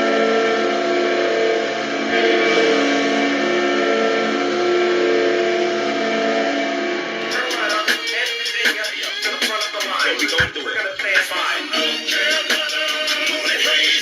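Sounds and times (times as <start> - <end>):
crowd noise: 7.2 - 14.0.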